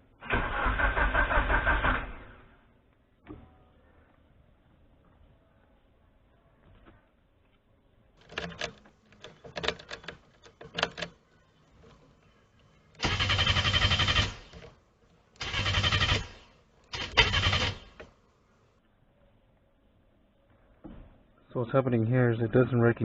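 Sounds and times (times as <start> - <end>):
car starter cranking: 0.2 - 2.4, 8.2 - 11.2, 12.9 - 14.8, 15.4 - 18.2.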